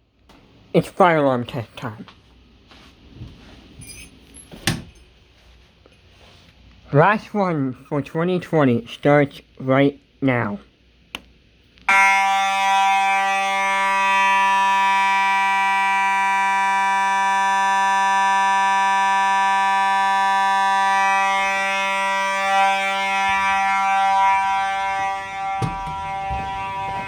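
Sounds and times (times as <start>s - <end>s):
click: 11.1s - 11.9s
fire alarm tone: 11.9s - 27.0s.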